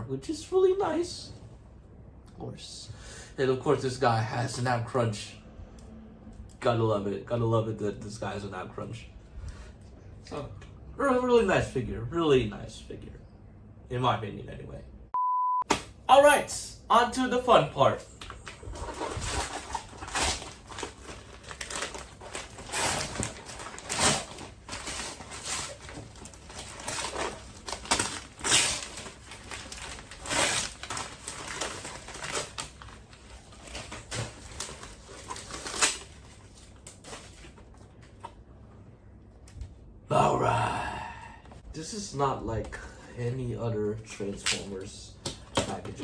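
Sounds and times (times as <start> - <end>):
packaging rustling and crinkling: 18.3 - 38.0.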